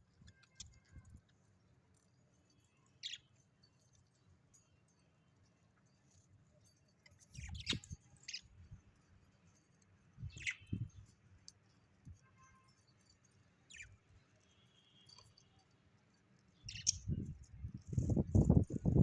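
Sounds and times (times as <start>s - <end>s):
bird chirping: 2.5s - 4.2s, 7.1s - 8.8s, 10.2s - 11.1s, 12.3s - 15.8s, 16.4s - 19.0s.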